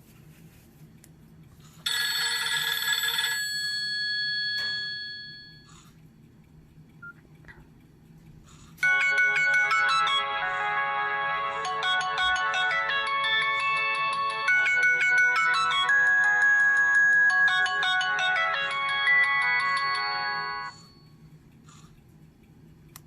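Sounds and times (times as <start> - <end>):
fast melodic phone ringtone: 1.9 - 5.7, 8.8 - 21.1
phone ringtone chord: 1.9 - 5.7, 8.8 - 21.2.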